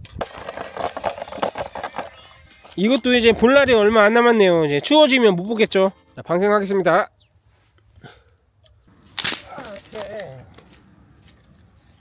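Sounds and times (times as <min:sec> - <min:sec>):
fish trap clicks and rustles: 0:09.2 - 0:10.8.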